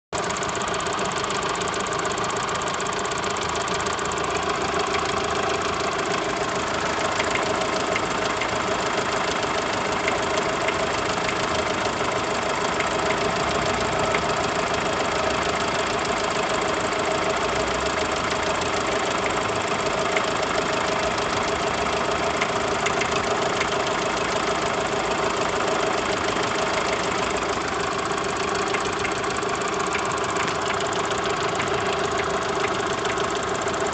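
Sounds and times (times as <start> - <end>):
car engine idling: 0.2 - 33.9
rapid engine knocking: 0.2 - 33.9.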